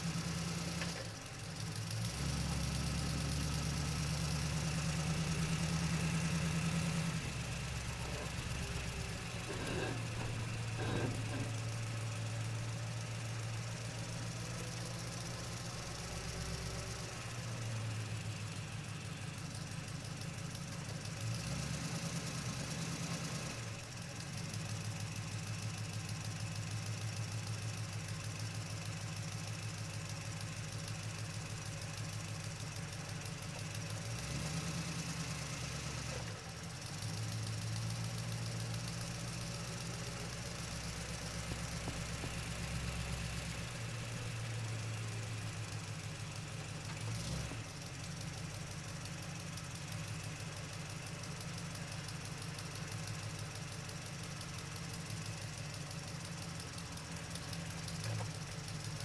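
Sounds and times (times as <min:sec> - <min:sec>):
truck engine running: 0:00.0 - 0:20.0, 0:36.0 - 0:53.6.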